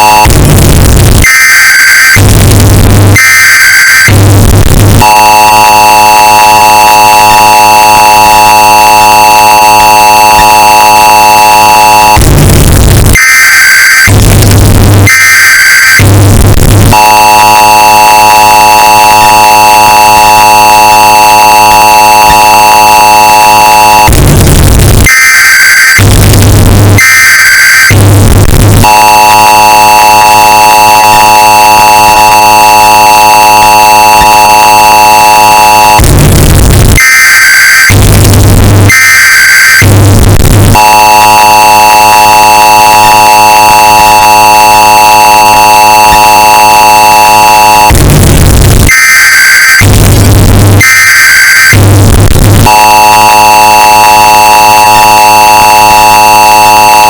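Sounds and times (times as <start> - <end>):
screeching digital data bursts: 0.0 - 0.3, 5.0 - 12.3, 16.9 - 24.2, 25.2 - 36.0, 39.6 - 47.9, 52.6 - 57.0
distorted two-tone attention signal: 0.0 - 57.0.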